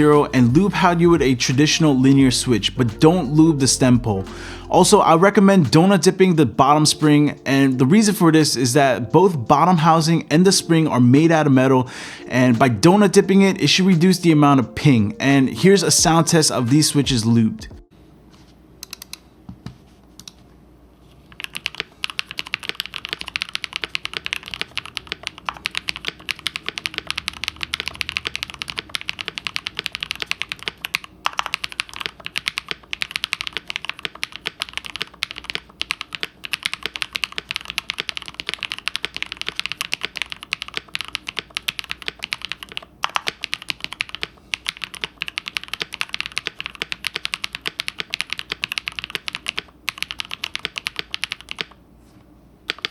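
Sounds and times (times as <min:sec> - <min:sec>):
mechanical keyboard keystrokes: 0:21.3 - 0:51.8, 0:52.7 - 0:52.9.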